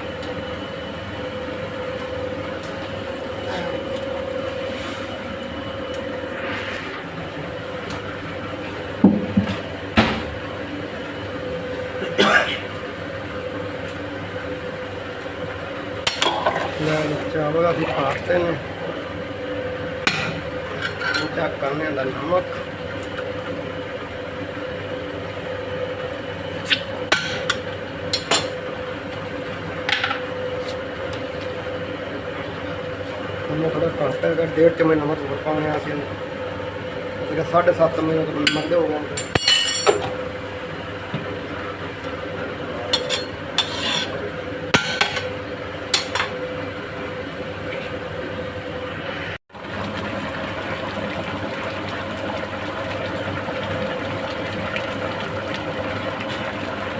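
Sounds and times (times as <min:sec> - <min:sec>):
steady hum: 0:00.0 - 0:13.6
cooking burner roaring: 0:00.0 - 0:56.9
metal spoon clinking on a pot: 0:38.5 - 0:40.1.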